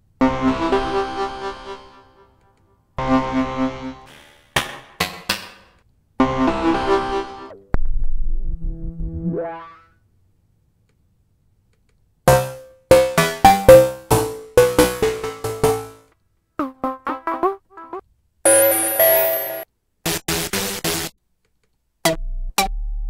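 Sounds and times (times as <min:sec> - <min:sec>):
synth notes dropping in pitch: 0:08.1 - 0:09.9, 0:12.3 - 0:16.0.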